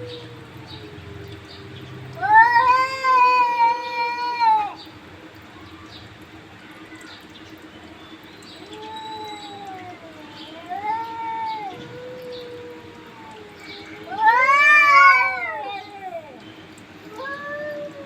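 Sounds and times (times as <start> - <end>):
cats yowling: 0.0 - 1.2, 2.0 - 4.9, 8.5 - 18.0
cat growling: 9.4 - 16.4.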